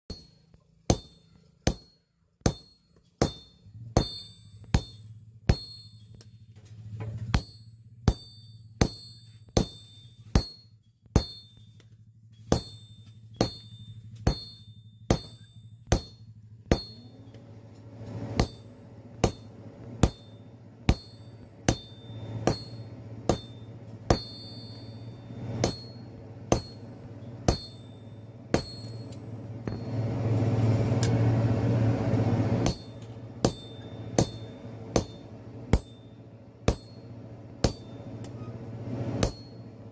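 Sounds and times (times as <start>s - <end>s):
hammer striking steel: 0.1s - 30.1s, 32.6s - 38.5s, 39.1s - 39.9s
low steady hum: 0.1s - 39.9s.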